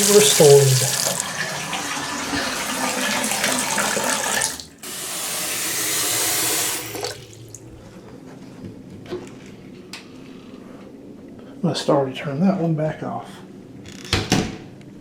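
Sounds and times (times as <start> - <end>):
faucet water rushing: 0.0 - 7.7.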